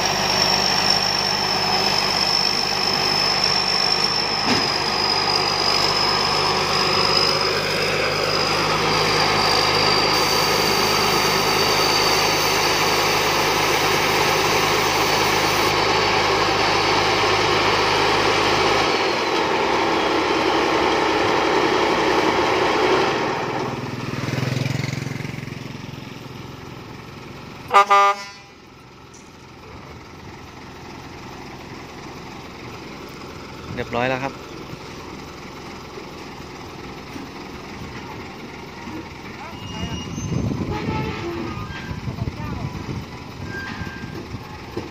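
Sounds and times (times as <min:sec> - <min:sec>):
thin high whine: 0:00.0 - 0:16.0
diesel engine running under load: 0:00.0 - 0:44.9.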